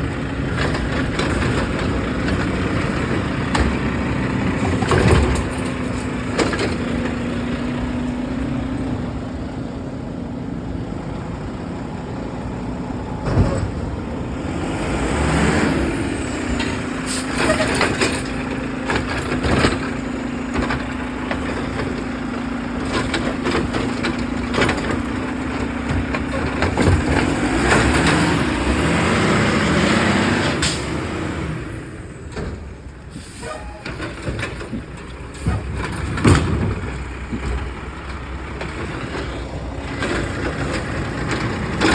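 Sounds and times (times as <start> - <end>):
garbage truck engine drone: 0.0 - 41.9
air brake hisses: 33.1 - 33.8.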